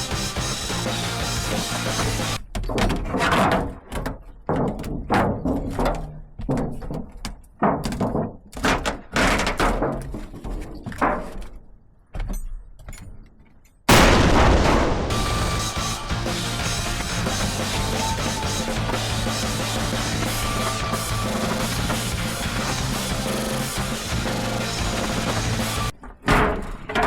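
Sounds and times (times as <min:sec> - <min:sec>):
rock music: 0:00.0 - 0:02.4, 0:14.5 - 0:25.9
irregular knocks and bangs: 0:00.4 - 0:11.6, 0:13.9 - 0:27.0.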